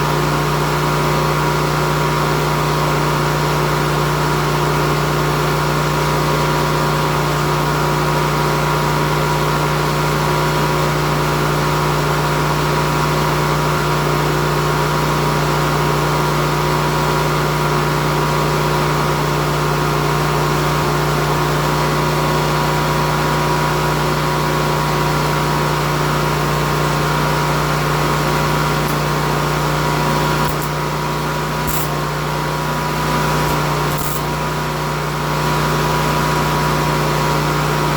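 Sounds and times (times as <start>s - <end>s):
motor humming: 27.6s - 32.2s, 32.8s - 34.6s.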